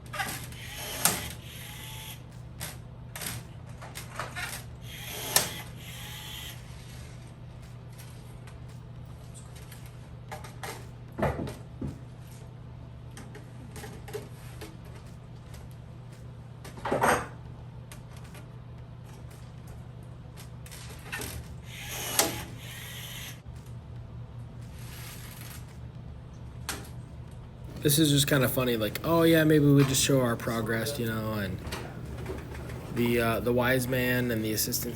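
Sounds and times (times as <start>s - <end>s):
steady low hum: 27.6s - 34.9s
kit parts clunking and rattling: 27.7s - 34.9s.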